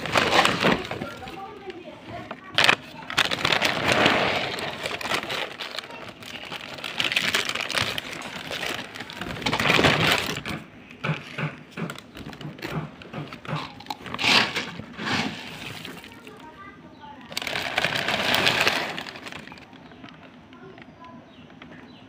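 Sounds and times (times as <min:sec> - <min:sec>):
bag rustling and crinkling: 0:00.0 - 0:10.8, 0:11.8 - 0:16.7, 0:17.3 - 0:20.1
knocks: 0:10.4 - 0:14.0.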